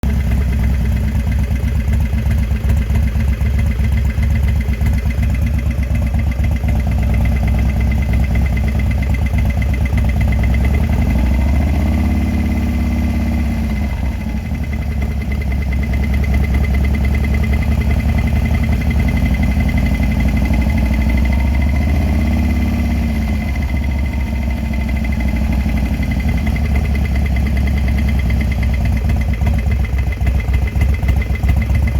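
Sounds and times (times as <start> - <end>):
engine idling with knocking: 0.0 - 31.9
engine revving: 10.4 - 15.1, 17.4 - 28.4.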